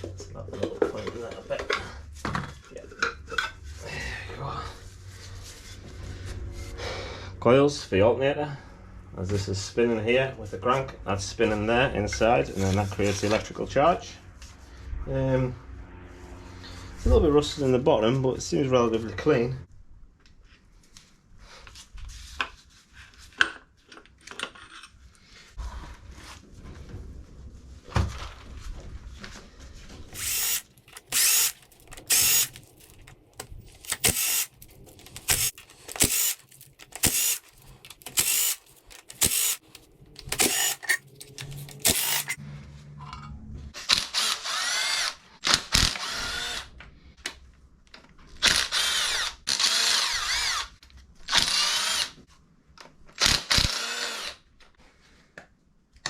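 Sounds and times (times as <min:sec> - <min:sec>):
power drill running in bursts: 0:30.2 - 0:32.5, 0:33.9 - 0:34.5, 0:35.2 - 0:36.4, 0:37.0 - 0:37.5, 0:38.2 - 0:39.6, 0:40.4 - 0:41.0, 0:41.8 - 0:42.4, 0:45.8 - 0:46.7, 0:48.6 - 0:50.6
metal parts clicking and knocking: 0:30.2 - 0:42.4.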